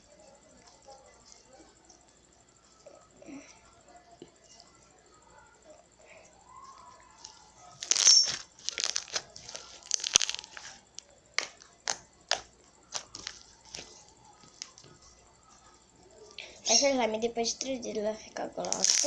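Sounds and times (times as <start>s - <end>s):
slime crackling and squishing: 6.7s - 14.9s, 18.6s - 19.0s
slime popping and clicking: 11.4s - 13.4s, 18.6s - 19.0s.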